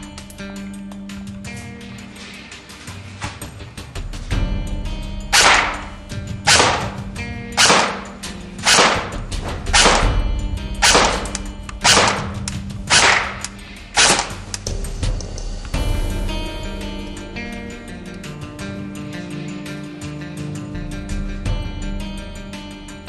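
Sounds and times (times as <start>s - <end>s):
background music: 0.0s - 23.0s
airsoft rifle single shots: 5.4s - 10.2s, 10.8s - 14.5s.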